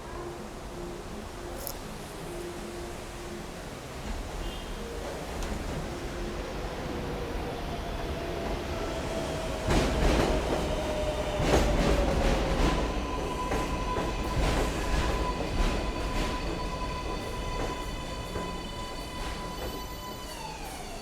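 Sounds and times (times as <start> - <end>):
steady train whine: 0.0 - 21.0
subway train running past: 0.0 - 21.0.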